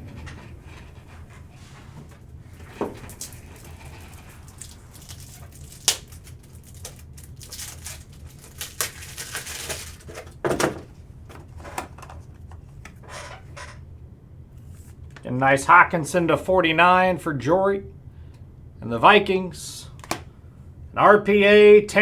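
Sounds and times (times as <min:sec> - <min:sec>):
low steady hum: 0:00.0 - 0:22.0
cards rustling and clicking: 0:02.6 - 0:10.4.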